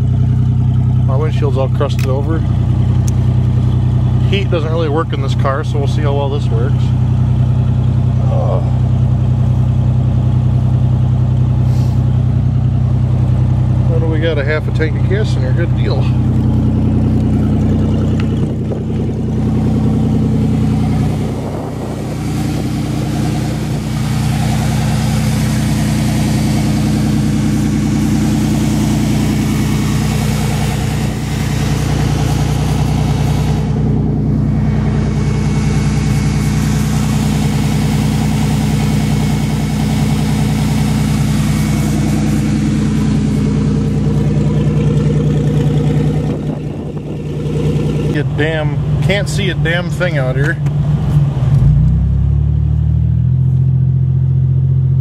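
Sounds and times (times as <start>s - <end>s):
car engine running: 0.0s - 55.0s.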